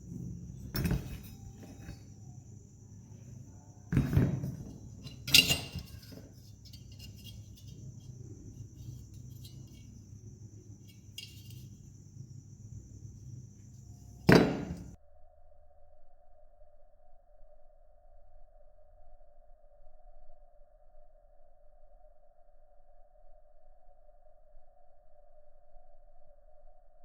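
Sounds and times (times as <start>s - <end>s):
metal parts clinking: 0.5s - 2.3s, 3.9s - 10.0s, 10.8s - 11.8s, 14.1s - 15.0s.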